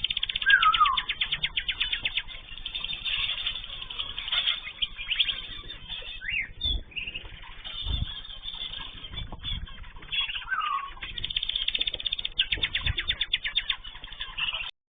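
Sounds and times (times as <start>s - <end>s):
birds chirping: 0.0s - 14.8s.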